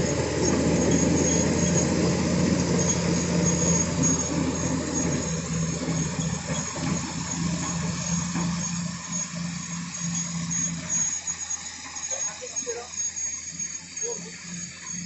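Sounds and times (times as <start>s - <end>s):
heavy rumble: 0.0s - 11.8s
heavy diesel engine running: 0.0s - 15.0s.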